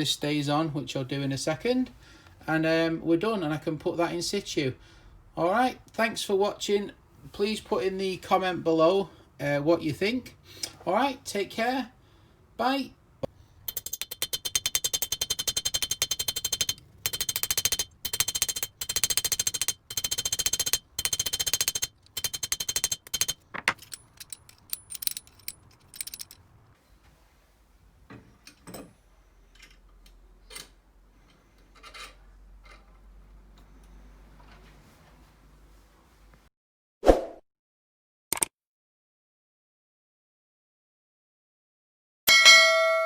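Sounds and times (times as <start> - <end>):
rapid metal-on-metal striking: 13.7 - 26.4.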